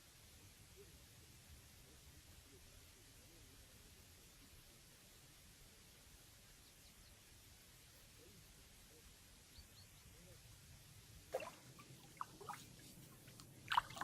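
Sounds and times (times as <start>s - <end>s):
faint chirp: 5.7s - 10.6s.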